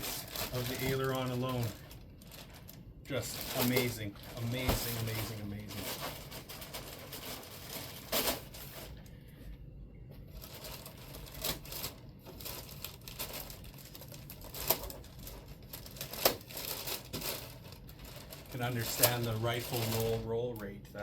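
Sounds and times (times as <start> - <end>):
packaging rustling: 0.0 - 9.0, 10.3 - 20.6
plastic wrap crinkling and tearing: 0.0 - 9.0, 10.3 - 20.7.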